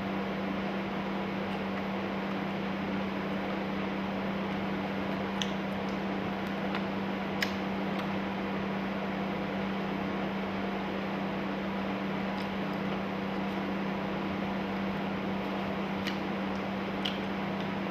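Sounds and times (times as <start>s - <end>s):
mechanical hum: 0.0s - 17.9s.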